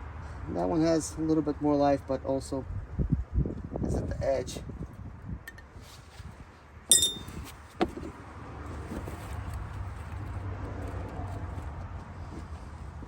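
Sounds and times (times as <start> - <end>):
sharp metallic clink: 6.9 - 7.5.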